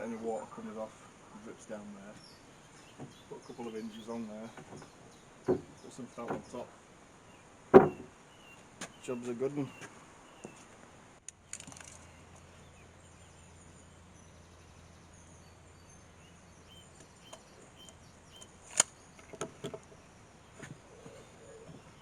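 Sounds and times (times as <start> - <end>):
low steady hum: 0.0 - 22.0
small birds chirping: 0.0 - 22.0
soft knocks: 4.4 - 6.7, 7.7 - 8.1.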